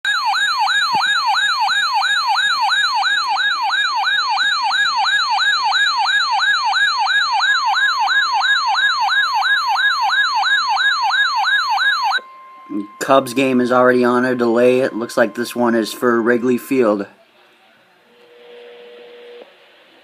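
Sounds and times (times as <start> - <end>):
rising whoop siren alarm: 0.1 - 17.1
steady alert tone: 10.9 - 17.2.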